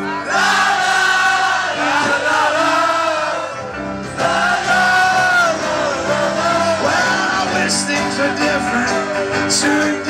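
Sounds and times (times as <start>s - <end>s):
voices singing in harmony: 0.2s - 10.0s.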